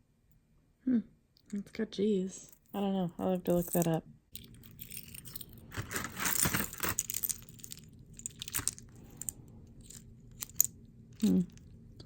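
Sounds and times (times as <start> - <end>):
jewelry clinking and rattling: 3.4 - 11.7.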